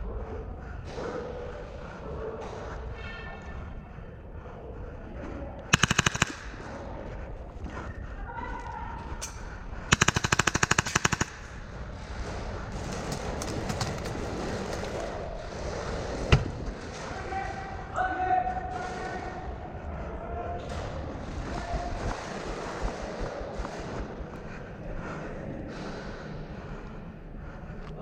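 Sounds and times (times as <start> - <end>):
airsoft gun firing full auto: 5.7 - 6.6, 9.9 - 11.6.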